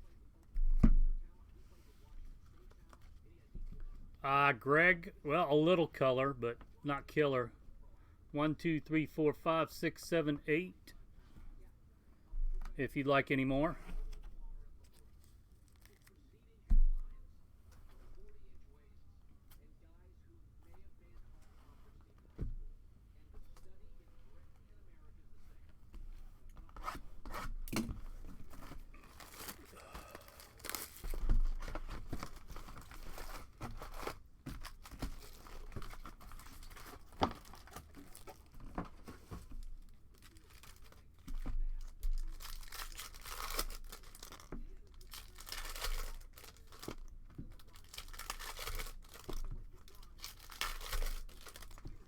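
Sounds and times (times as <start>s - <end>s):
card wrappers tearing and crinkling: 14.8s - 16.2s, 26.8s - 52.0s.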